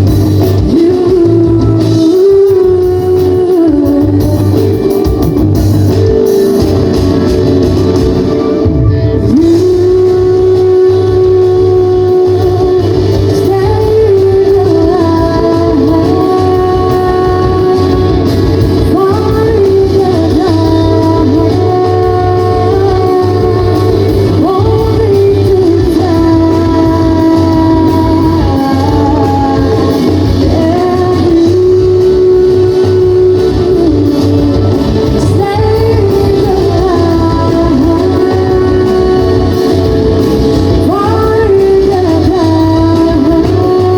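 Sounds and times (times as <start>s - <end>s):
live band playing: 0.0s - 43.9s
person singing: 0.0s - 43.9s.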